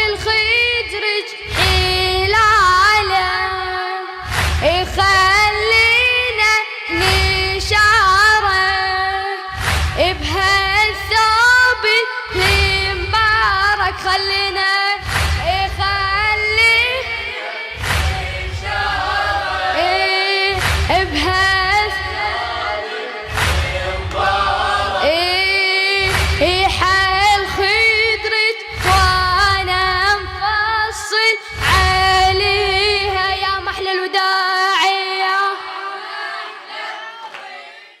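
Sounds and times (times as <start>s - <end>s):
boy singing mourning chant: 0.0s - 17.8s, 25.0s - 36.0s
low pulsing beat: 12.3s - 14.1s, 15.0s - 17.0s, 17.8s - 25.3s, 26.0s - 30.9s.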